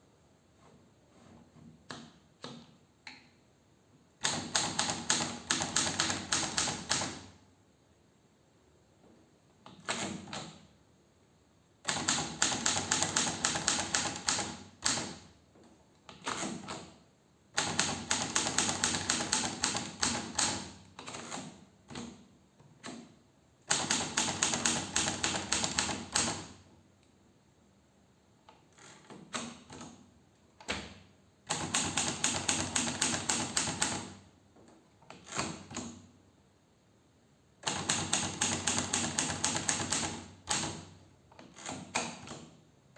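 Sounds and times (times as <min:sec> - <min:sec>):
manual typewriter keystrokes: 0:04.2 - 0:07.2, 0:09.7 - 0:10.6, 0:11.8 - 0:15.2, 0:16.1 - 0:16.9, 0:17.6 - 0:22.2, 0:23.7 - 0:26.6, 0:30.6 - 0:34.2, 0:35.1 - 0:36.0, 0:37.6 - 0:40.8.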